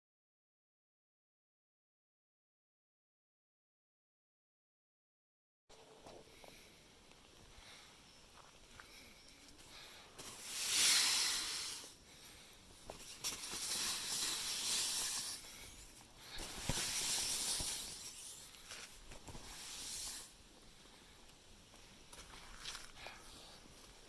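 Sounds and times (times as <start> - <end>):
hissing noise: 9.6 - 20.5.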